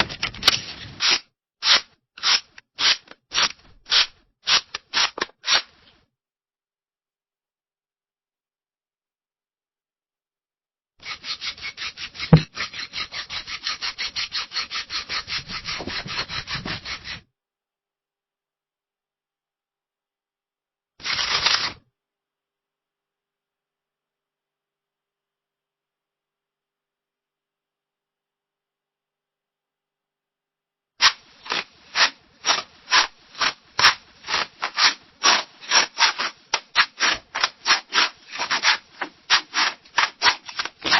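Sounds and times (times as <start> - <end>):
scissors cutting paper: 0.0 - 5.8, 21.0 - 21.8, 31.0 - 40.9.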